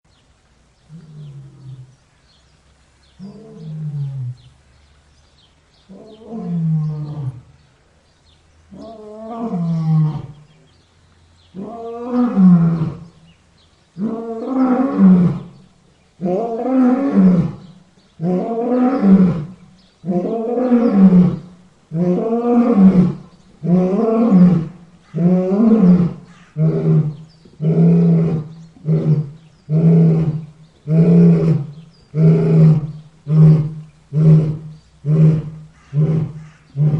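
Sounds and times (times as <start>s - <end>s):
lion roaring: 8.7s - 10.4s, 16.2s - 36.9s.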